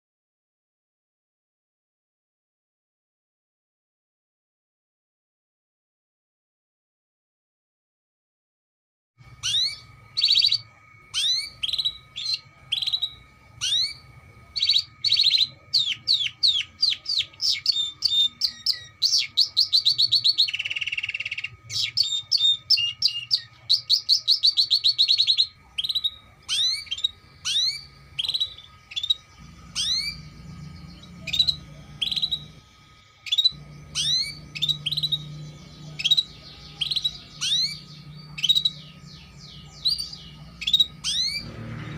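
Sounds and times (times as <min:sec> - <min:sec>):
canary singing: 0:09.2 - 0:41.9.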